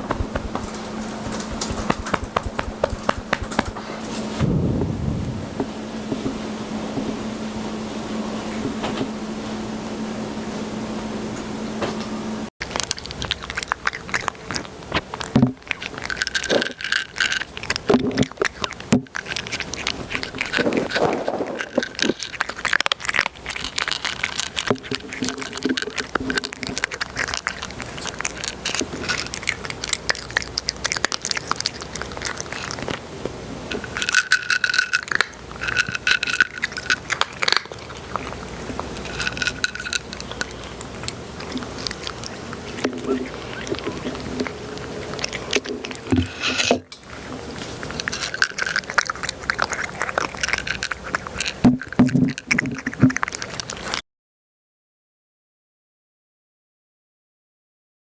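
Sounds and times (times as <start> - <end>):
crackling scraping noise: 0.0 - 6.3, 12.6 - 54.0.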